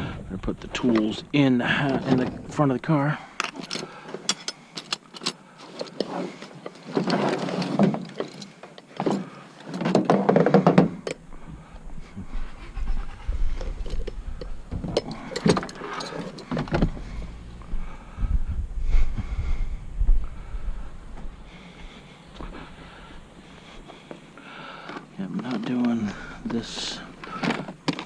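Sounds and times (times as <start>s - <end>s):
wind rumble on microphone: 11.5s - 15.3s, 16.6s - 21.6s
scrap scraping: 12.2s - 14.6s.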